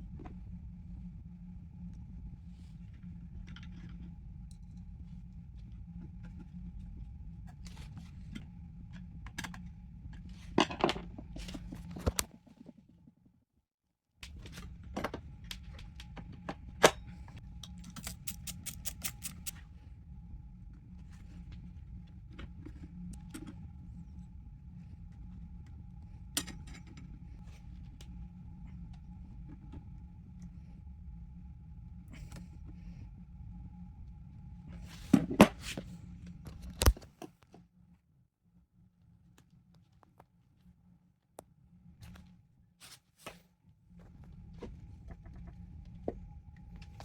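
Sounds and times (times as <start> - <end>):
steady low hum: 0.0 - 12.3, 14.2 - 39.8, 40.4 - 47.0
tools and metal parts clicking: 17.7 - 19.5.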